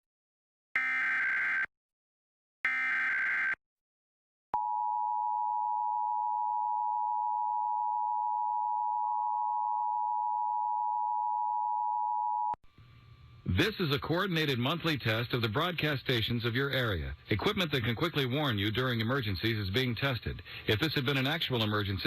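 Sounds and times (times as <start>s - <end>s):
harsh digital data bursts: 0.8s - 1.7s, 2.7s - 3.6s.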